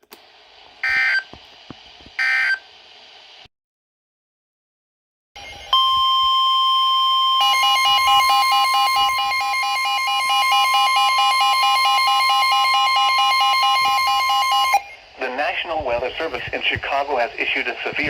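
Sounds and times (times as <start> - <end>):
loud steady high alert tone: 5.4 - 15.5.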